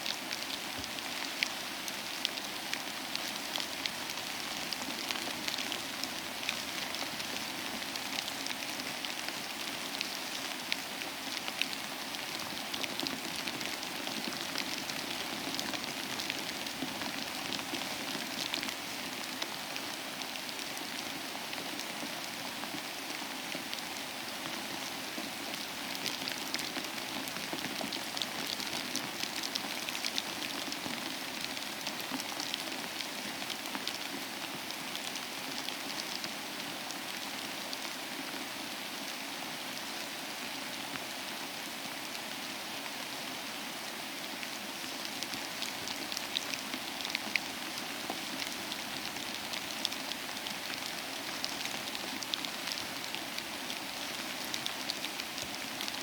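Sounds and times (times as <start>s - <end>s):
steady rain falling: 0.0s - 56.0s.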